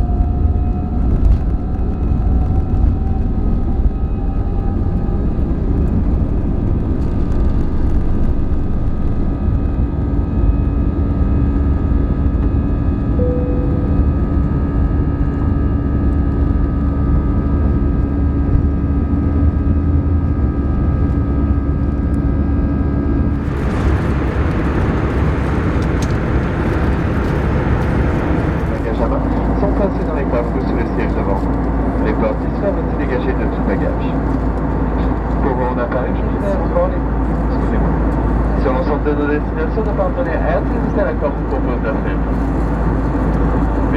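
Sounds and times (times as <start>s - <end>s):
airplane cabin engine rumble: 0.0s - 43.9s
short tone: 13.2s - 15.4s.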